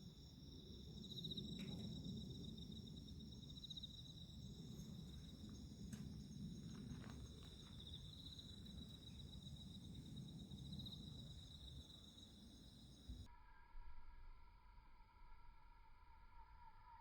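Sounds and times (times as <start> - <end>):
insects chirping: 0.0 - 13.3.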